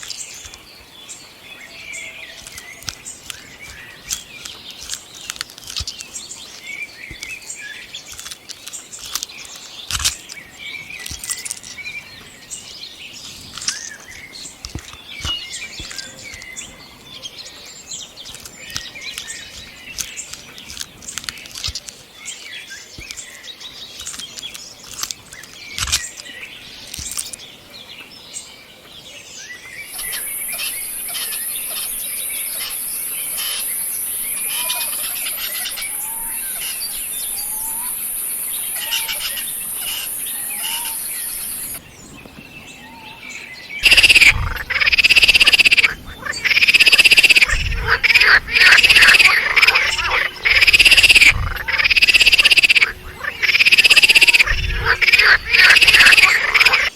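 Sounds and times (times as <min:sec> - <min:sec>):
bird chirps: 0:29.5 - 0:41.9, 0:42.6 - 0:56.9
rapid chattering calls: 0:29.8 - 0:41.8, 0:43.8 - 0:56.9
steady high buzz: 0:43.8 - 0:56.9.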